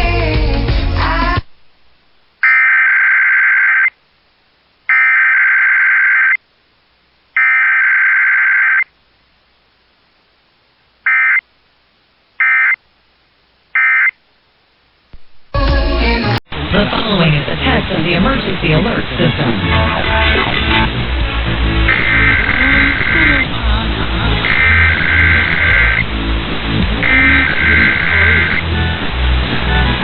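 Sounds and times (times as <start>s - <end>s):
loud buzzy data screeches: 2.4s - 4.0s, 4.9s - 6.4s, 7.4s - 8.9s, 11.1s - 11.4s, 12.4s - 12.8s, 13.8s - 14.2s, 21.7s - 23.5s, 24.4s - 28.6s
short electronic blips: 2.4s - 4.0s, 4.9s - 6.4s, 7.4s - 8.9s, 11.1s - 11.5s, 12.4s - 12.8s, 13.8s - 14.2s, 21.9s - 23.5s, 24.4s - 26.1s, 27.0s - 28.6s.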